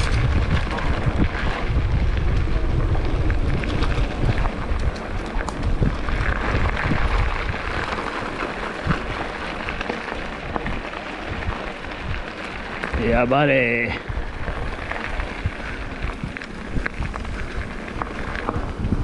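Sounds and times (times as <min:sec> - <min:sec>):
bike clicks and rattles: 0:00.0 - 0:19.0
wind buffeting microphone: 0:00.0 - 0:19.0.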